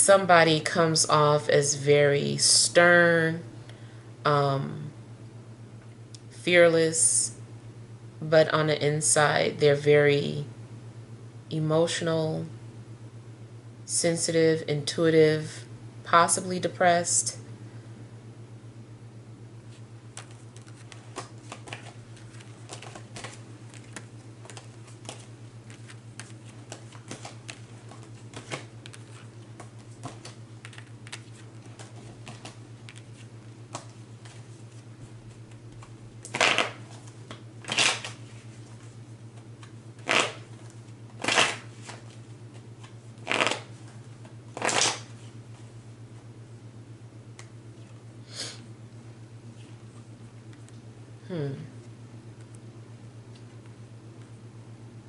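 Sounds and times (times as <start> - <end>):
low hum: 0.0 - 55.0
cards shuffling: 19.7 - 38.9, 39.6 - 43.8, 44.5 - 45.3
cards clicking and tapping: 20.2 - 33.1.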